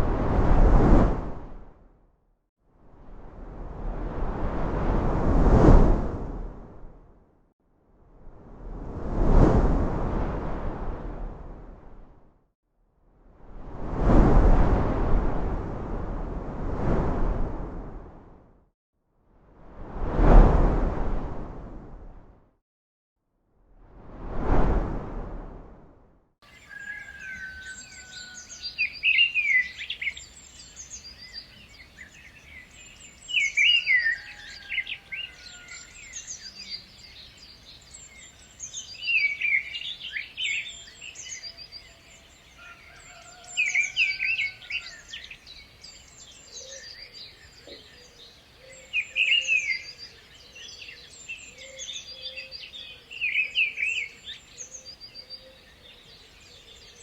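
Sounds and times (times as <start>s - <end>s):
birds singing and chirping: 26.5s - 57.0s.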